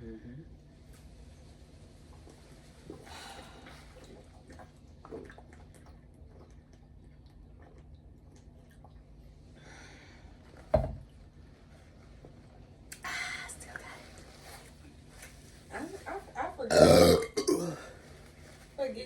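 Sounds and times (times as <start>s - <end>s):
person gulping a drink: 2.2s - 9.2s, 16.7s - 18.0s.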